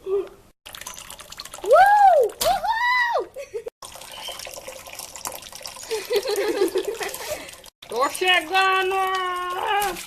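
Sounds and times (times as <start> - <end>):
child whooping: 1.6 - 3.3
water running and splashing: 3.8 - 10.0.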